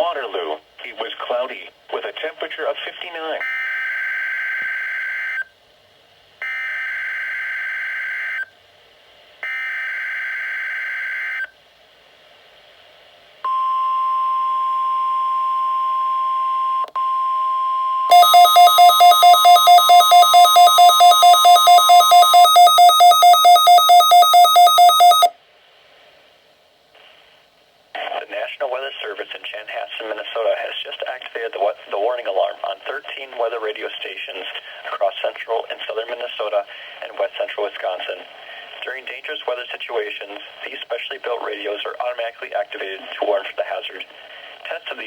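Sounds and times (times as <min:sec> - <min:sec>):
loud pulsing alarm beep: 0:13.5 - 0:25.3
steady attention tone: 0:13.5 - 0:25.3
digital header data bursts: 0:18.1 - 0:25.3.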